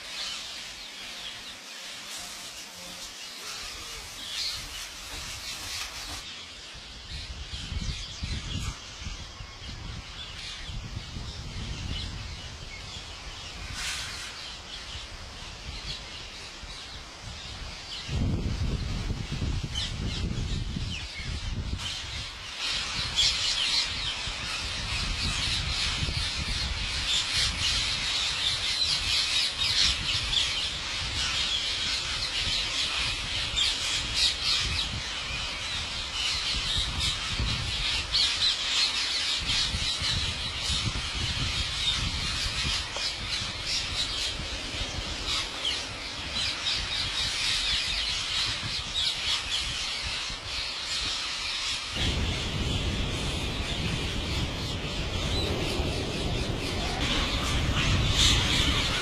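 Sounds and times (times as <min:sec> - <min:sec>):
parrots squawking and chattering: 0:41.7 - 0:59.0.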